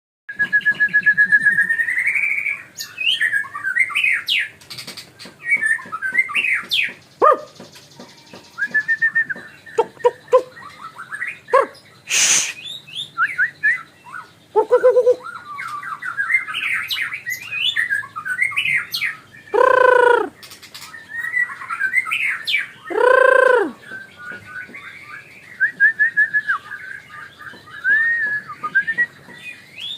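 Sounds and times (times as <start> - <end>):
songbird whistling and trilling: 0.3 - 4.6, 5.4 - 29.9
bird drawn-out arched calls: 9.7 - 12.8, 14.1 - 17.1, 19.5 - 20.4, 21.2 - 23.9.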